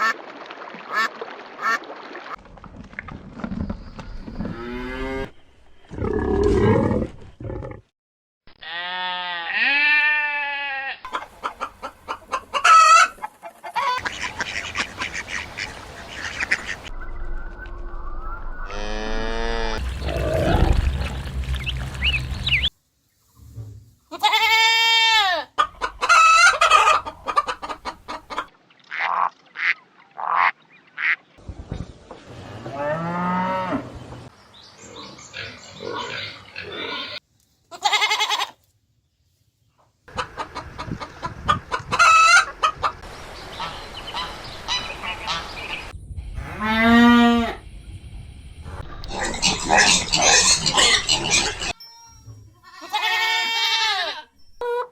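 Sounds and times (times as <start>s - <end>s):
chickens clucking: 11.1s - 16.9s, 25.6s - 28.5s, 40.1s - 45.6s.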